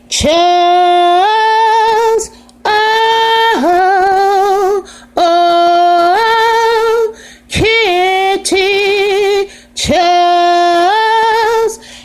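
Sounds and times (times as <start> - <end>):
woman singing unaccompanied: 0.0 - 11.9
singer breathing: 4.8 - 5.2, 7.1 - 7.5, 9.5 - 9.8, 11.8 - 12.0.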